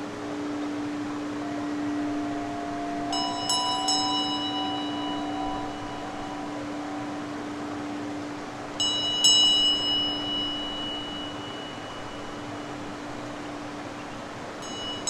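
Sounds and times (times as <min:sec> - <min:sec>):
river water hiss: 0:00.0 - 0:15.0
singing bowl hum: 0:00.0 - 0:15.0
small bell ringing: 0:03.1 - 0:06.6, 0:08.8 - 0:12.6, 0:14.6 - 0:15.0.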